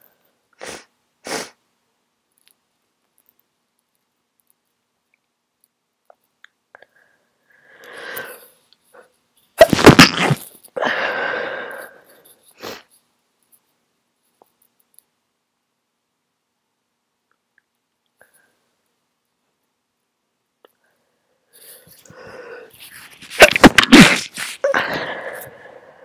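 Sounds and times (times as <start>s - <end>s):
breathing: 6.8s - 9.1s, 10.8s - 12.9s, 18.2s - 18.7s, 20.7s - 23.1s, 24.7s - 26.0s
person sneezing: 9.6s - 11.0s, 23.2s - 25.4s.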